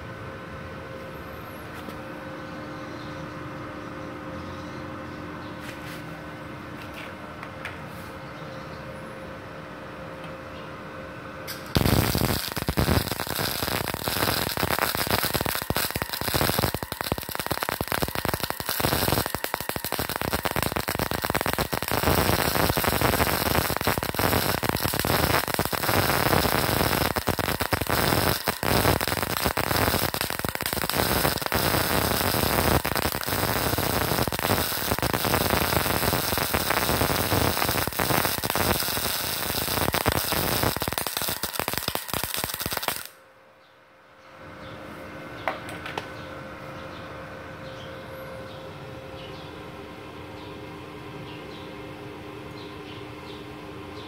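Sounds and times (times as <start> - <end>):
welding arc crackling: 11.5 - 43.2.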